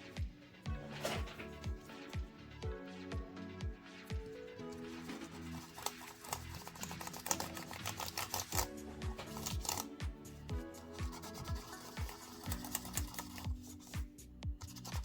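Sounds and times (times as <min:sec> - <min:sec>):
electronic background music: 0:00.0 - 0:15.0
keyboard keys clicking: 0:05.4 - 0:10.0, 0:11.0 - 0:14.0.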